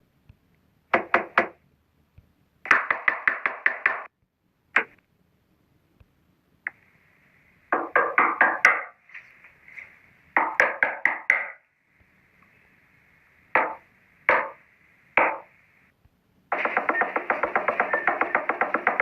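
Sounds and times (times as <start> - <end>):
knocking on a door: 2.7 - 4.1, 7.7 - 8.9, 13.6 - 14.6, 15.2 - 15.4, 16.5 - 19.0.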